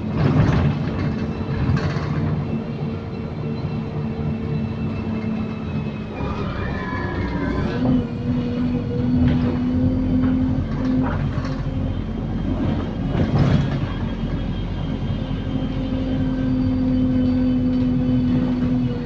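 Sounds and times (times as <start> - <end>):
bus body knocks and rattles: 0.0 - 2.9, 9.2 - 14.7.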